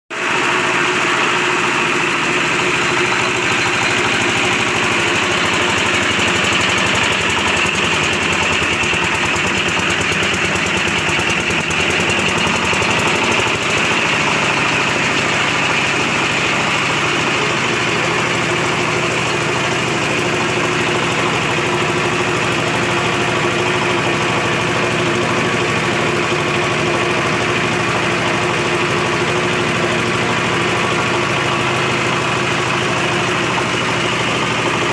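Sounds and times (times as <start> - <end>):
pellet machine running: 0.1 - 34.9.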